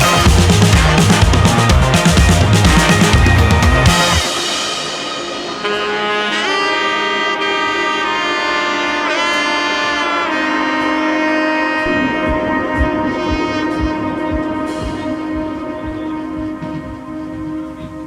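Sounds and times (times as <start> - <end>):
low thumping beat: 0.0 - 6.0, 11.8 - 18.0
saxophone holding long notes: 0.0 - 18.0.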